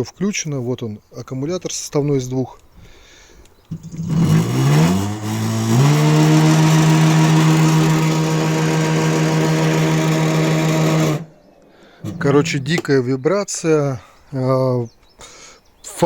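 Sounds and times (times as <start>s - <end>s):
electric motor humming: 3.7s - 11.3s.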